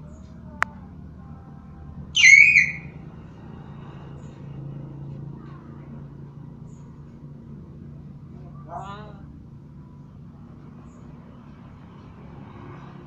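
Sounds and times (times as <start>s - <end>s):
bird whistled call: 2.2s - 2.9s.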